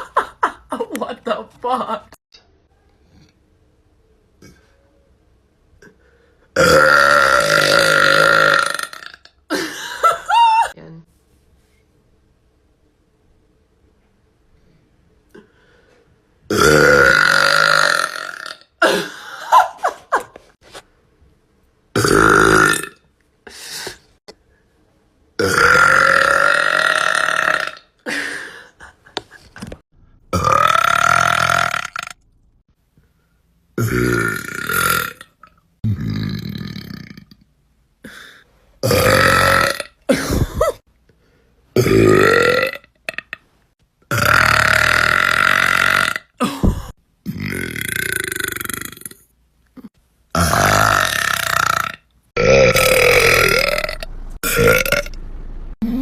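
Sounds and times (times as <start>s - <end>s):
woman burping loudly: 6.6s - 10.8s, 16.5s - 19.6s, 22.0s - 23.0s, 25.4s - 28.2s, 30.3s - 32.2s, 33.8s - 37.3s, 38.8s - 40.8s, 41.8s - 43.4s, 44.1s - 49.2s, 49.8s - 55.1s.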